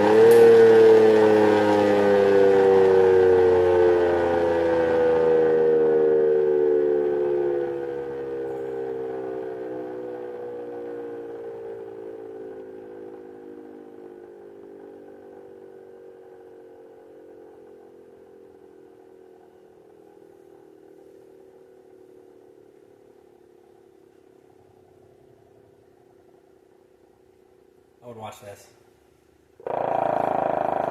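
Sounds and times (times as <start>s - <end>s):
siren winding down: 0.0s - 22.5s, 29.6s - 30.9s.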